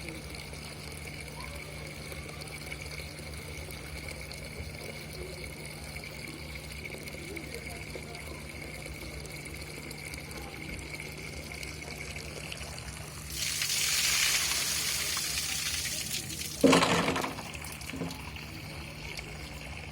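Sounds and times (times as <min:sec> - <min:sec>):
water hammer thump: 0:16.6 - 0:18.2
pipe knock: 0:16.6 - 0:18.3.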